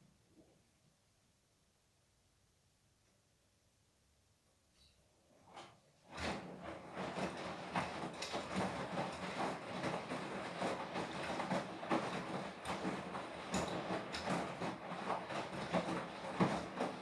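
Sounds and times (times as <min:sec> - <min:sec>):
washing machine drum turning: 0:06.2 - 0:17.0.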